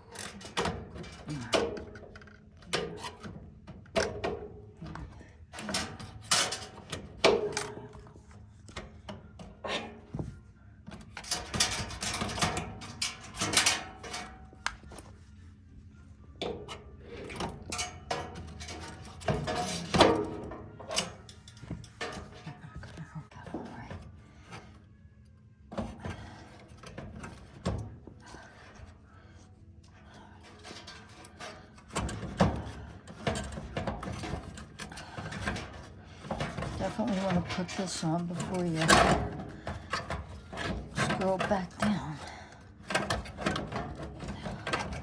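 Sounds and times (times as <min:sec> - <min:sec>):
heater parts knocking and clunking: 0:00.0 - 0:15.1, 0:16.4 - 0:24.8, 0:25.6 - 0:29.2, 0:29.8 - 0:45.0.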